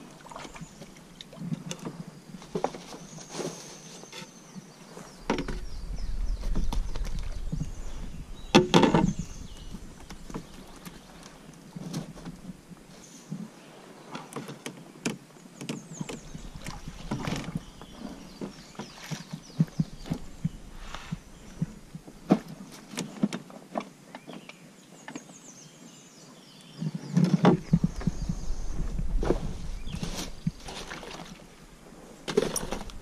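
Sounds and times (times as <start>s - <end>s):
river water: 0.0s - 33.0s
canoe and paddle knocking: 5.2s - 12.6s, 14.2s - 24.5s, 27.0s - 31.5s.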